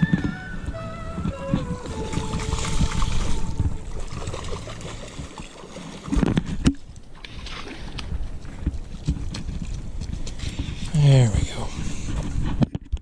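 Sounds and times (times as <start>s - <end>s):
river water flowing: 0.0s - 9.0s.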